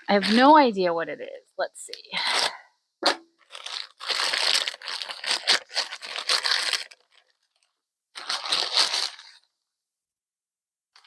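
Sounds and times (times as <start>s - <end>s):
package wrapping tearing and crinkling: 3.0s - 9.5s.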